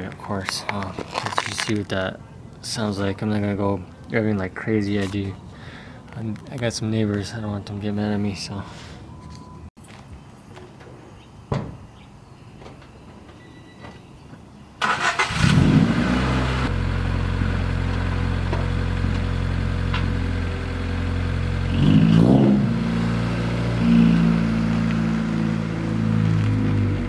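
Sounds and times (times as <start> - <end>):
car engine starting and idling: 14.8 - 27.0
engine revving: 14.8 - 27.0.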